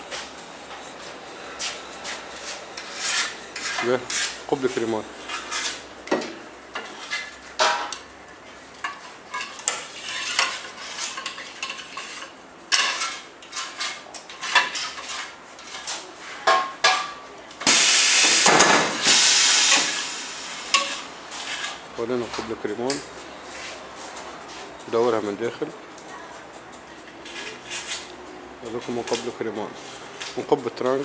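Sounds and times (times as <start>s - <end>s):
loud steady hiss: 17.6s - 21.8s.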